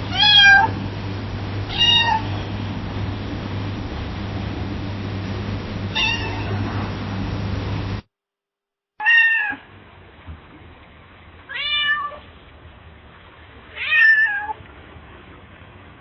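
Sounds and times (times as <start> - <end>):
faint low hum: 0.0 - 8.1
cat meowing: 0.1 - 0.8, 1.7 - 2.5, 5.9 - 6.6, 9.0 - 9.6, 11.5 - 12.2, 13.8 - 14.6.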